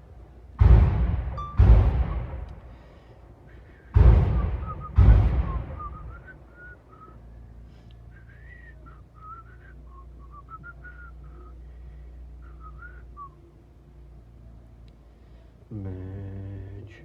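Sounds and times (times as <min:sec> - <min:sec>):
faint low hum: 0:00.0 - 0:17.0
person whistling a tune: 0:04.4 - 0:07.2, 0:08.1 - 0:11.6, 0:12.4 - 0:13.4.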